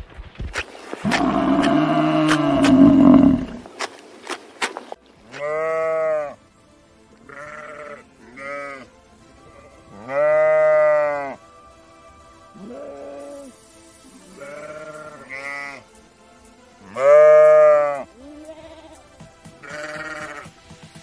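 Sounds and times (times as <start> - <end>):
sheep bleating: 1.0 - 3.6, 5.3 - 6.4, 7.3 - 8.9, 9.5 - 11.4, 14.3 - 15.8, 16.9 - 20.5.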